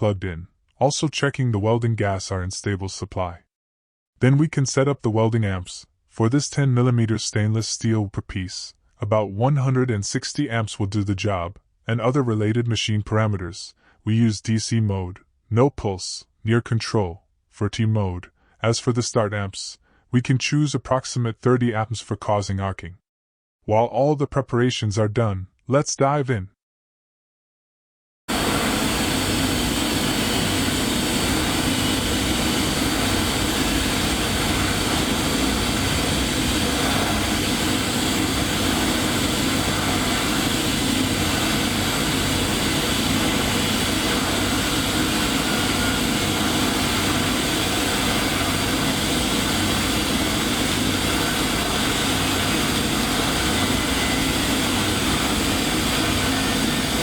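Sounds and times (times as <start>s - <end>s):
welding arc noise: 28.3s - 57.0s.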